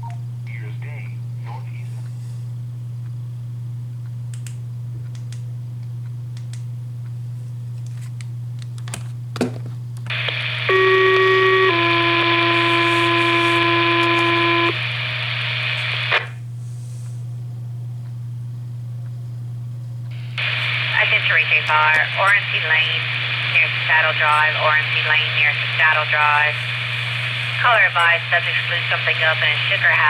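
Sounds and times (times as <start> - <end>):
steady low hum: 0.0 - 30.0
radio static: 10.1 - 16.4, 20.1 - 30.0.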